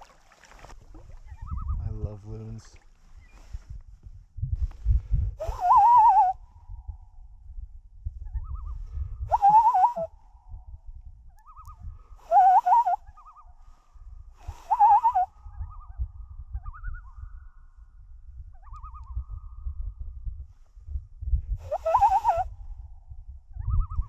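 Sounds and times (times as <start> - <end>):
wind rumble on microphone: 0.0 - 24.0
loons giving tremolo calls: 5.4 - 6.4, 9.3 - 10.2, 12.2 - 13.5, 14.6 - 16.0, 21.6 - 22.5.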